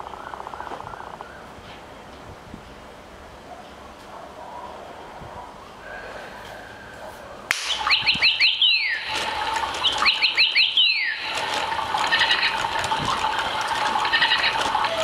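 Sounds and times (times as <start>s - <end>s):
toy bird chirping: 7.7s - 15.0s.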